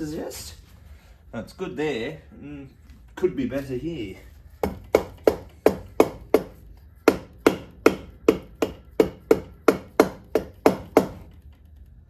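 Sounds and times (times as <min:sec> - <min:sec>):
hammer tapping on metal: 0:04.6 - 0:11.5.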